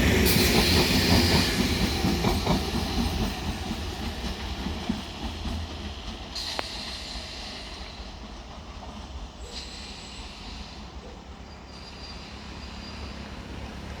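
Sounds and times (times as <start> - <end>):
train wheels rumbling on track: 0.0 - 14.0
faint high squeals: 9.4 - 13.6.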